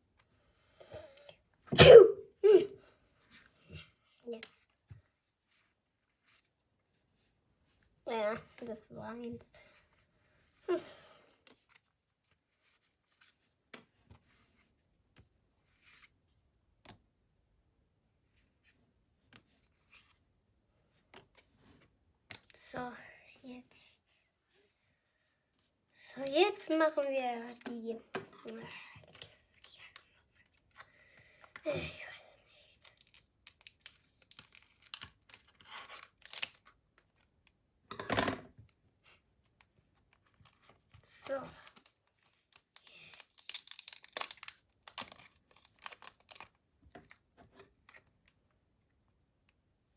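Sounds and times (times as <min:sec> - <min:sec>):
foil wrapper crinkling: 0:32.8 - 0:36.8, 0:41.6 - 0:47.2
packaging rustle: 0:40.3 - 0:47.2.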